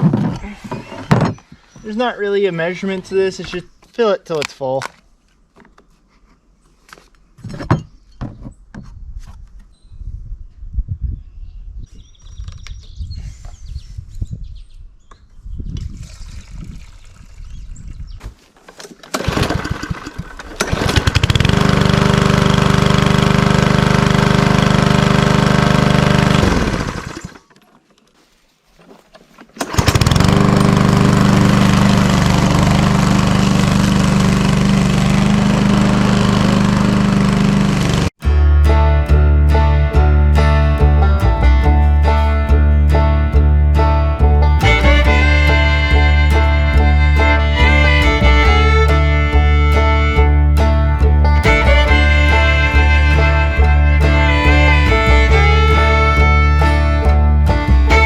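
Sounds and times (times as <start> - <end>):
lawnmower engine running: 18.7 - 27.5, 29.6 - 38.9, 39.8 - 58.0.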